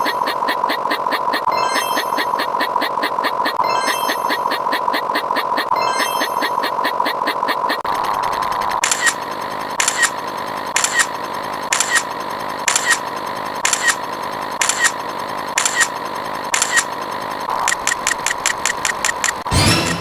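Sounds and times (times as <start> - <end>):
sharp clicks: 8.7 - 20.0.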